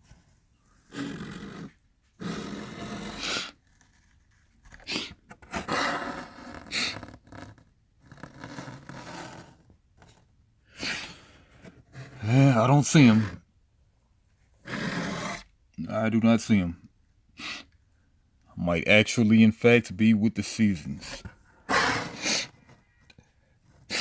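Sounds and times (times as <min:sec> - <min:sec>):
plastic cases rustling and scraping: 0:03.5 - 0:10.4, 0:21.0 - 0:24.0.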